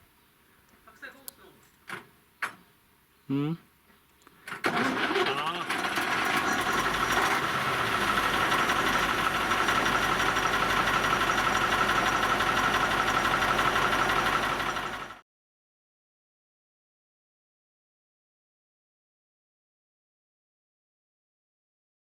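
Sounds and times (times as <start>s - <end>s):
truck engine idling: 4.7s - 15.2s.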